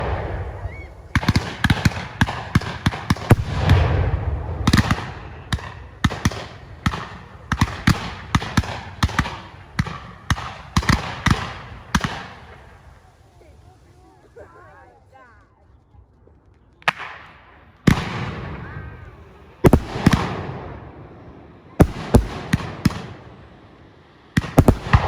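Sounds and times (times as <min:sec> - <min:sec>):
fireworks bangs with echo: 0:00.0 - 0:14.3, 0:16.8 - 0:25.0
heavy rumbling boom: 0:03.3 - 0:07.4.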